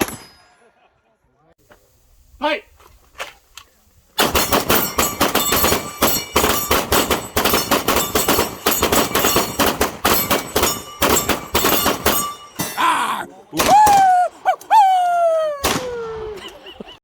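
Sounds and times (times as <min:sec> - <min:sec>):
metallic clanging and banging: 0:04.6 - 0:13.0.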